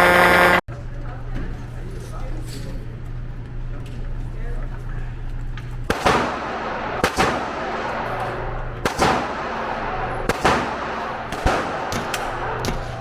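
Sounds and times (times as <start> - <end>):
pistol shots with echo: 5.9 - 13.0.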